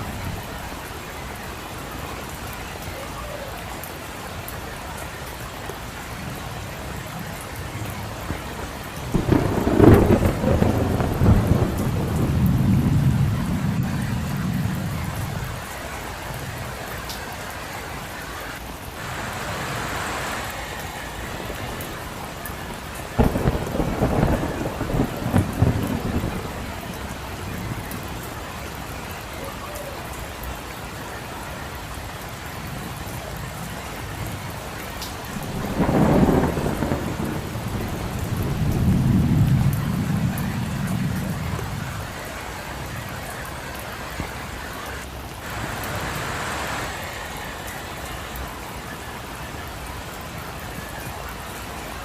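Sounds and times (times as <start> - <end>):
steady rain: 0.0 - 52.0
thunder cracking and rumbling: 7.2 - 15.9, 21.0 - 28.9, 32.9 - 44.6.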